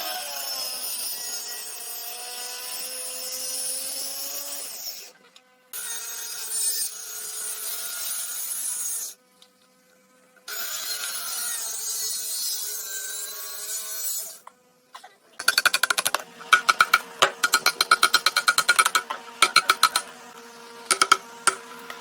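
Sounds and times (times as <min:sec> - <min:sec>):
power tool rasping wood: 0:15.4 - 0:22.0.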